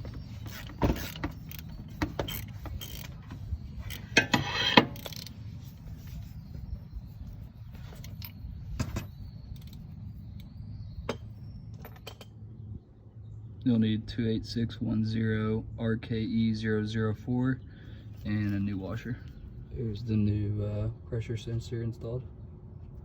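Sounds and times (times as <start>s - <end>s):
low steady hum: 0.0s - 23.0s
hand ratchet clicking: 0.5s - 5.3s.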